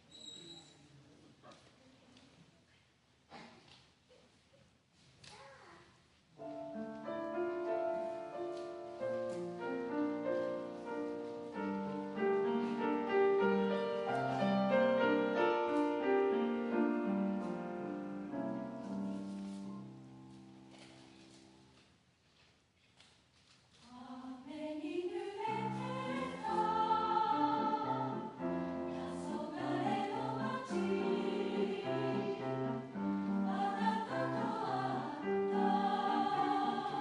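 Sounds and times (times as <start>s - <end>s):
piano chords: 6.4s - 20.7s, 25.5s - 37.0s.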